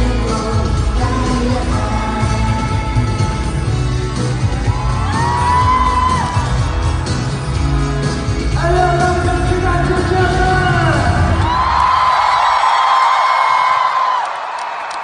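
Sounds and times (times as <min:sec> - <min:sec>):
person singing: 0:00.0 - 0:03.9, 0:08.5 - 0:11.4
live pop band playing: 0:00.0 - 0:11.9.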